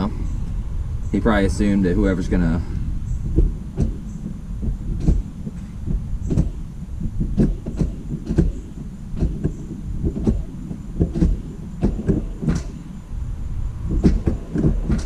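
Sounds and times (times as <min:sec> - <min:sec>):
steady low rumble: 0:00.0 - 0:15.0
knocks and clunks: 0:03.1 - 0:13.1, 0:13.8 - 0:15.0.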